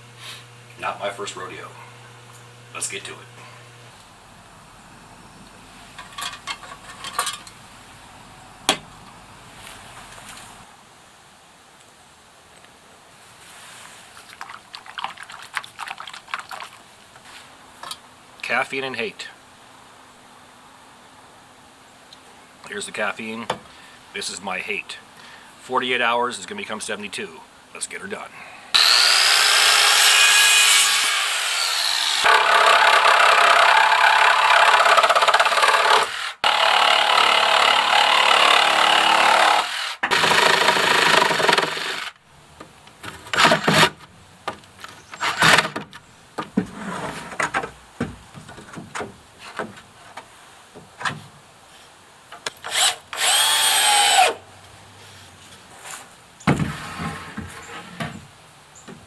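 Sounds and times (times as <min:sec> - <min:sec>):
wood knocking and clattering: 0:05.9 - 0:07.6, 0:42.6 - 0:51.4, 0:56.4 - 0:59.0
motor spinning up and down: 0:28.8 - 0:33.0, 0:52.7 - 0:54.4
power tool cutting wood: 0:28.8 - 0:42.2, 0:43.3 - 0:44.0, 0:52.6 - 0:54.4.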